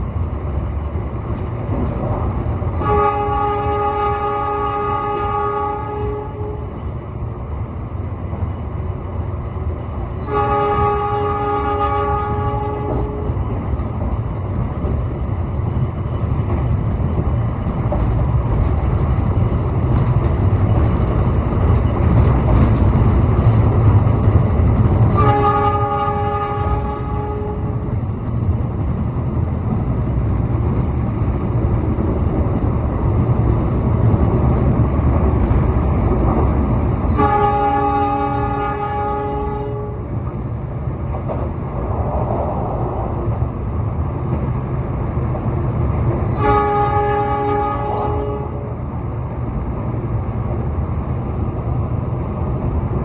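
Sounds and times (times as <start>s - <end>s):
train rumbling on rails: 0.0s - 53.0s
train horn blasts: 2.7s - 6.8s, 10.2s - 13.4s, 25.1s - 27.8s, 37.1s - 40.1s, 46.3s - 48.8s.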